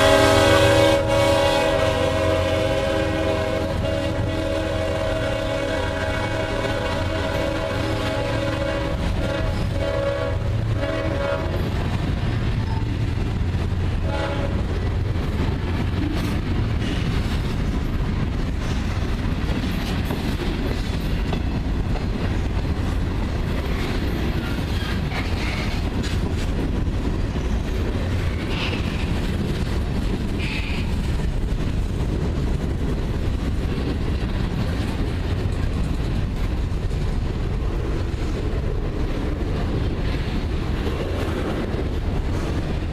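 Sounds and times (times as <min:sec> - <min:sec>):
locomotive horn: 0:00.0 - 0:11.8, 0:13.9 - 0:14.8.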